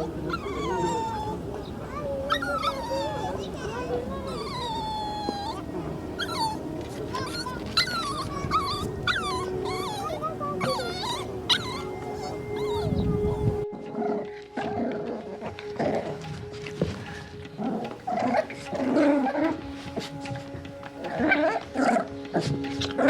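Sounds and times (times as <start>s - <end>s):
dog whimpering: 0.0s - 16.2s.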